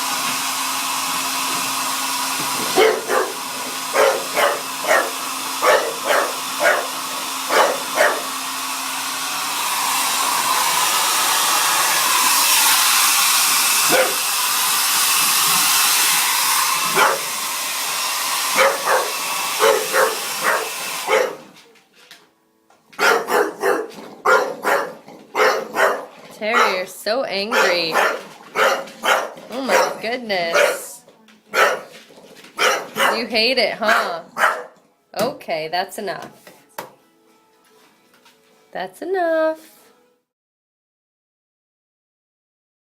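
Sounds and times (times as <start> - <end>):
hairdryer blowing: 0.0 - 21.6, 24.3 - 31.0, 32.8 - 34.2
dog barking: 2.8 - 8.3, 13.9 - 14.2, 16.9 - 17.3, 18.6 - 21.5, 23.0 - 26.9, 27.5 - 30.9, 31.5 - 32.0, 32.6 - 34.8.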